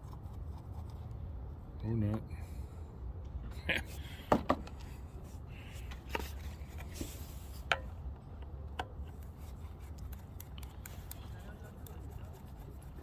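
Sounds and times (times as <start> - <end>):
rubbing and scraping: 9.3 - 13.0.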